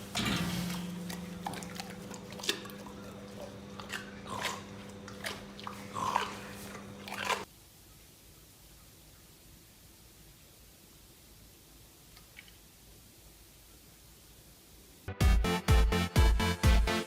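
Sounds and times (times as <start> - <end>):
chewing and crunching: 0.0 - 7.5
steady low hum: 0.0 - 7.5.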